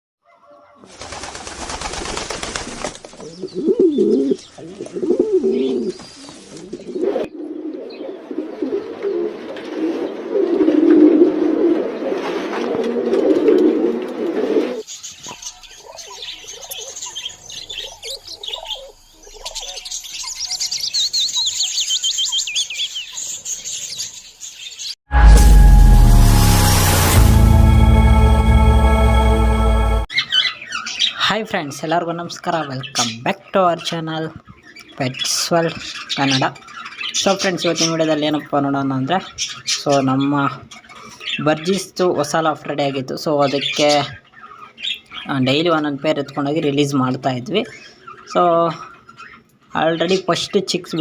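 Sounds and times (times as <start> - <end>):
birds cooing: 2.1 - 20.4
budgerigars chirping and warbling: 14.9 - 24.9, 30.1 - 42.2, 42.9 - 51.0.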